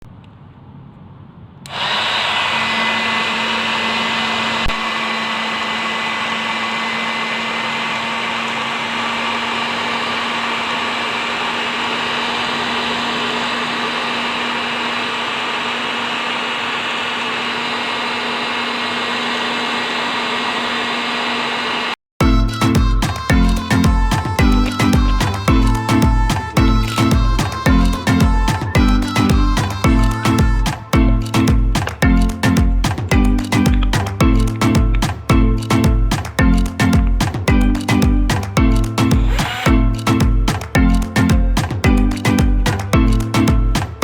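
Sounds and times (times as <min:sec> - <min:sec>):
mini vacuum cleaner running: 0:01.7 - 0:22.0, 0:39.2 - 0:39.7.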